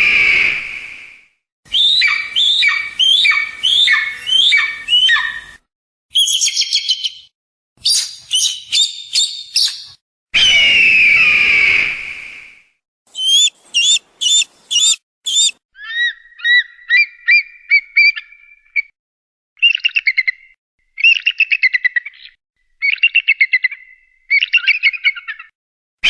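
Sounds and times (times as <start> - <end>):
eagle calling: 1.7 - 5.5, 13.1 - 17.5.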